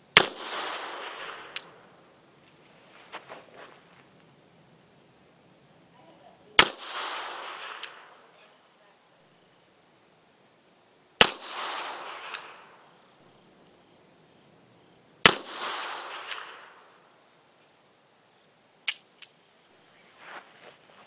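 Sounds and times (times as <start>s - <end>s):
revolver shots with echo: 6.6s - 8.2s, 11.2s - 12.8s, 15.2s - 16.9s.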